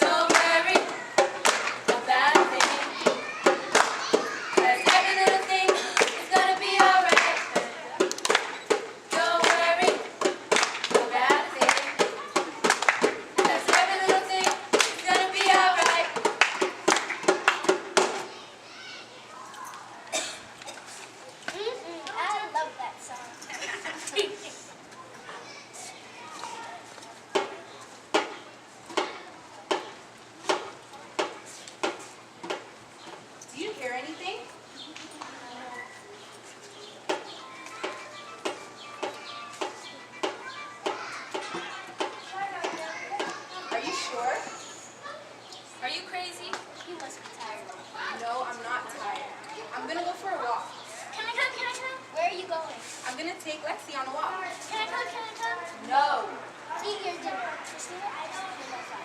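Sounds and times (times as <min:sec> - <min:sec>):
young voices singing: 0:00.0 - 0:08.1, 0:08.7 - 0:16.4
rapid hand claps and slaps: 0:00.2 - 0:18.2.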